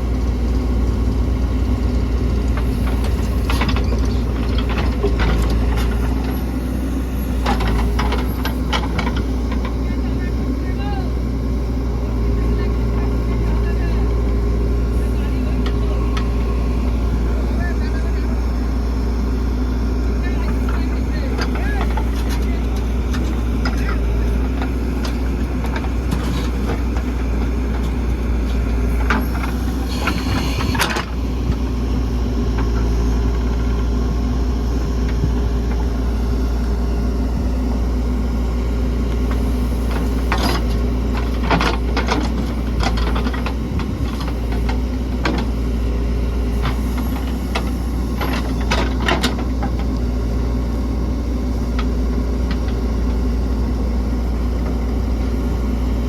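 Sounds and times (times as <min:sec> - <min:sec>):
diesel engines running: 0:00.0 - 0:56.0
clanks and knocks: 0:02.5 - 0:06.3, 0:07.4 - 0:09.8, 0:39.3 - 0:45.5, 0:46.6 - 0:50.0.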